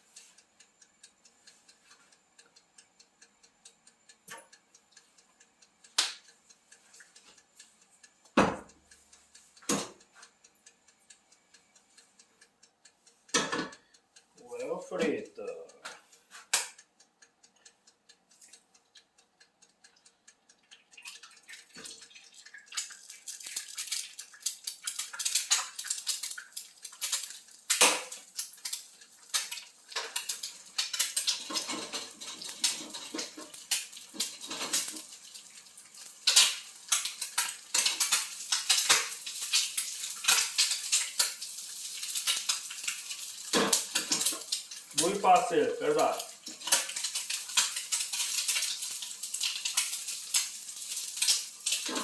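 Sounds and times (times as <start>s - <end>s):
eggs frying hiss: 0.0s - 52.0s
metal utensil scraping pan: 29.4s - 35.2s, 36.3s - 45.4s, 46.5s - 52.0s.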